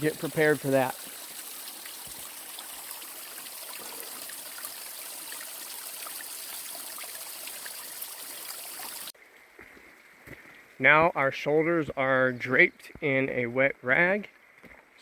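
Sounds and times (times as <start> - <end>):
small waterfall rushing: 0.0 - 9.1.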